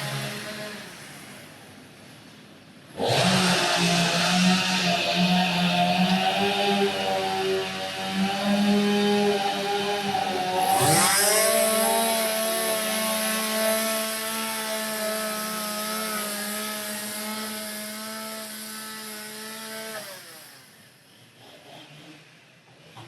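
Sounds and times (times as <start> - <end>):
power tool motor spinning: 3.0 - 21.0.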